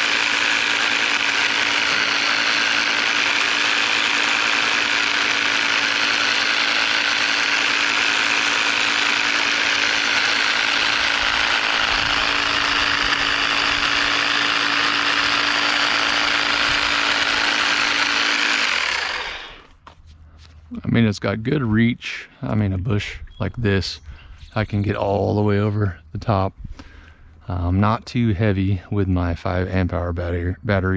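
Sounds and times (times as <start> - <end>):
hedge trimmer running: 0.0 - 19.8.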